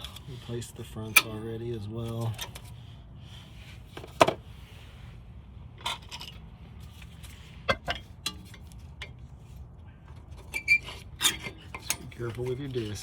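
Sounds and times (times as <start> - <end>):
metal brake parts clinking: 7.7 - 9.2, 10.3 - 13.0.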